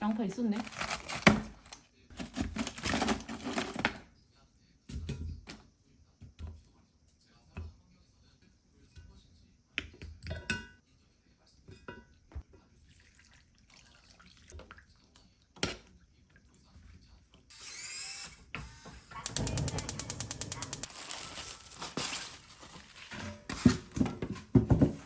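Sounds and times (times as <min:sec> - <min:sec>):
kitchen knocks and clatters: 0:04.9 - 0:06.6, 0:09.8 - 0:10.8, 0:19.1 - 0:25.0.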